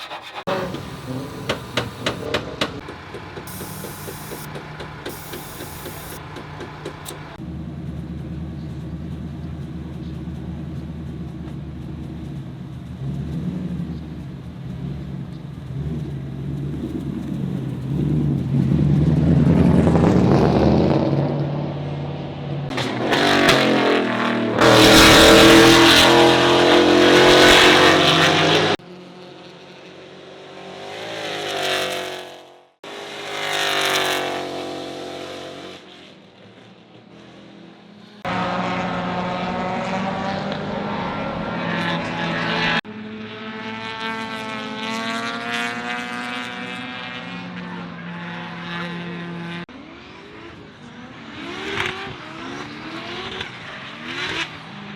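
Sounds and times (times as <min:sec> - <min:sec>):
race car engines revving: 0:00.0 - 0:54.9.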